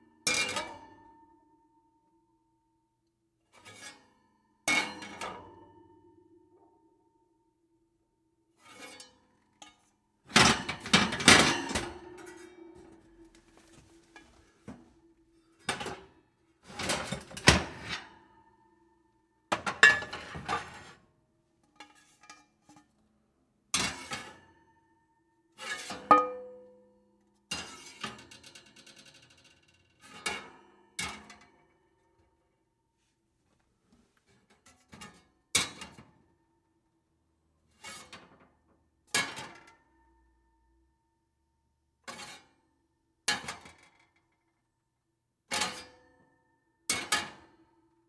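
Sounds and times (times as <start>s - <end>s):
metal pans clattering: 10.4s - 14.9s, 19.6s - 20.8s, 26.0s - 26.6s.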